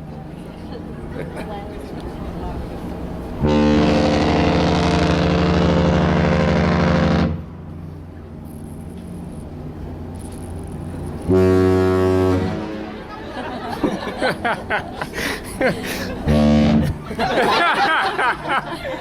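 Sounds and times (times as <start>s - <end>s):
ship horn blasts: 3.3s - 7.8s, 11.2s - 13.3s, 16.2s - 17.0s.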